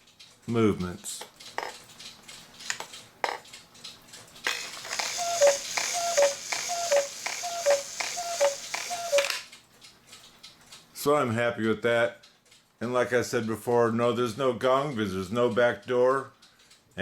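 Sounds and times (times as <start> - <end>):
clock movement clicks: 0.0 - 10.9
cuckoo clock calling: 4.4 - 9.6.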